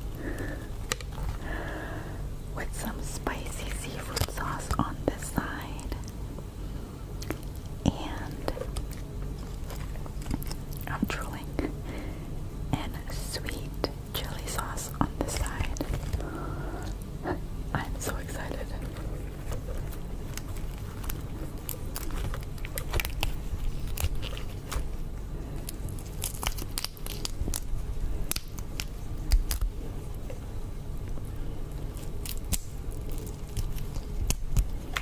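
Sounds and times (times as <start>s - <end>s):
prawn shells crackling and snapping: 0.0s - 1.7s, 2.8s - 6.5s, 7.1s - 11.8s, 12.8s - 17.2s, 17.8s - 35.0s.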